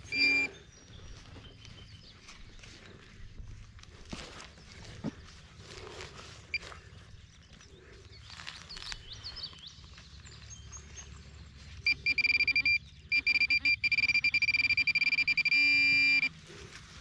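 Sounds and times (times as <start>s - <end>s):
metal detector pinpointer beeping: 0.0s - 0.6s, 11.8s - 16.4s.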